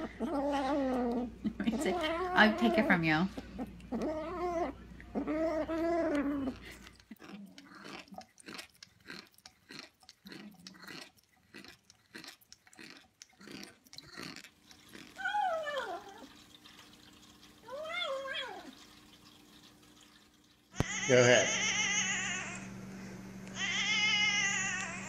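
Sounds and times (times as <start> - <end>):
cat chewing and crunching: 0.0 - 20.6
cat meowing: 23.6 - 25.0.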